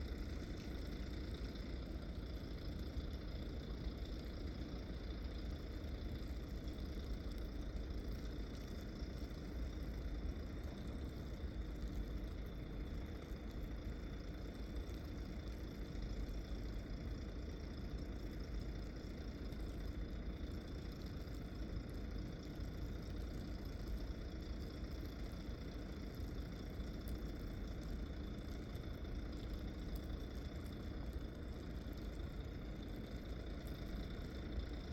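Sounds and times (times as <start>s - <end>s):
faint high whine: 0.0s - 13.6s
low mechanical rumble: 0.0s - 34.9s.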